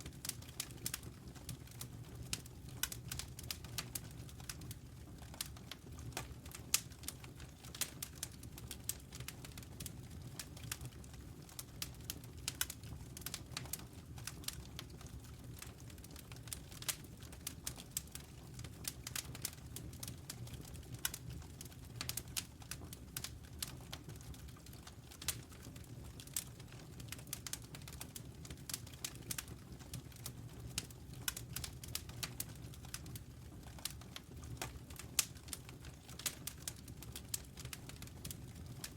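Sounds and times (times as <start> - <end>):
low rumble of flames: 0.0 - 38.9
burning wood popping and snapping: 28.7 - 38.9.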